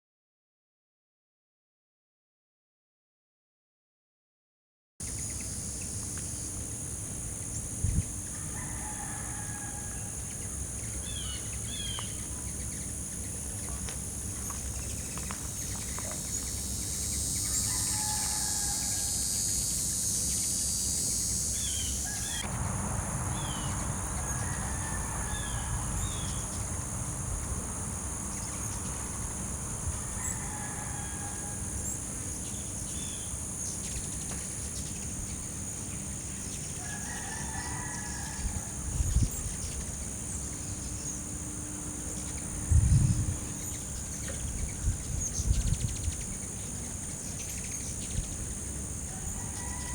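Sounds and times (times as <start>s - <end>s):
high insect drone: 5.0s - 49.9s
distant bird calls: 7.2s - 41.3s.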